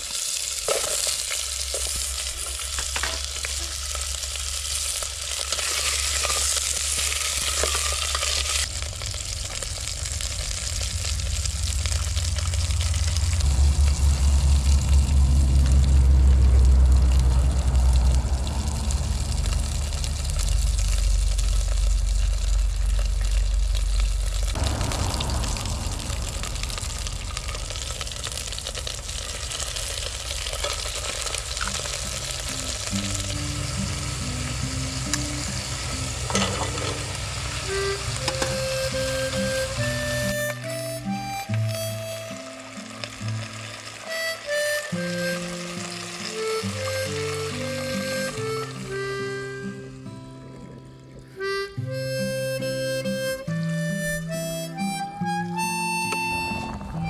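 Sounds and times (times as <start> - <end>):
food sizzling in a pan: 0.0 - 50.1
background music: 32.6 - 57.0.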